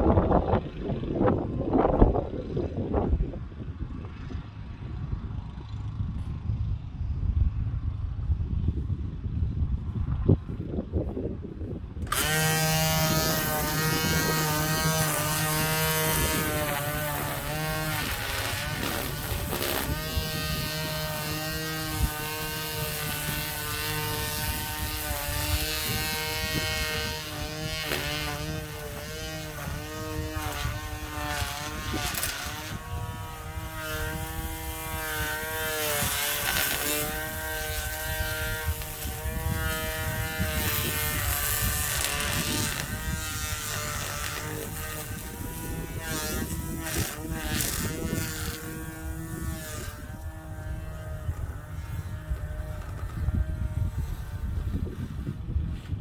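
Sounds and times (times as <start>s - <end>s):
lawn mower running: 12.0s - 54.7s.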